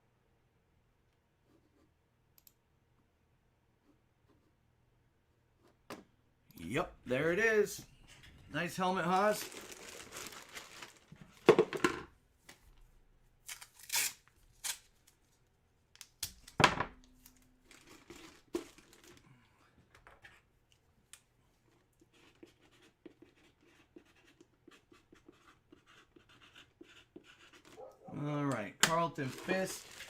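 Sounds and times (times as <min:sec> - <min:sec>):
packaging ripping and rustling: 0:09.0 - 0:11.5, 0:13.5 - 0:15.2, 0:17.2 - 0:19.2, 0:28.9 - 0:30.0.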